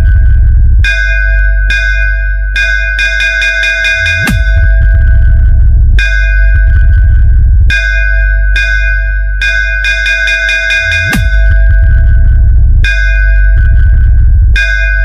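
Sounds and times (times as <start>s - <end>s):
deep electronic bass: 0.0s - 15.0s
bell-like synth strikes: 0.8s - 5.3s, 6.0s - 15.0s
falling bass sweep: 4.3s - 8.8s, 11.1s - 15.0s.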